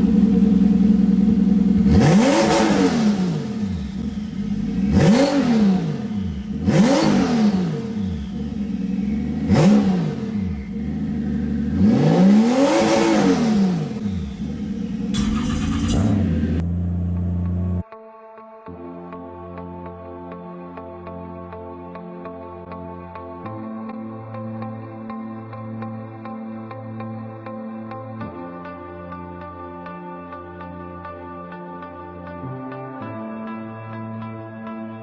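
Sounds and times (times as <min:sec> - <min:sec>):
car engine idling and revving: 0:00.0 - 0:17.9.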